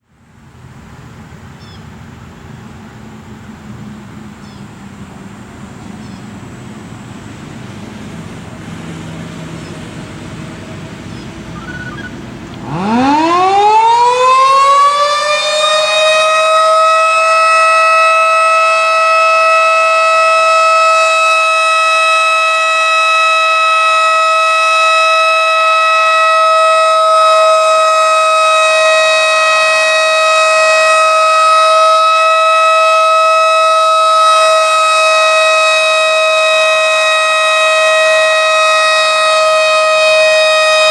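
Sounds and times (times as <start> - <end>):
electromechanical siren: 11.0 - 40.9.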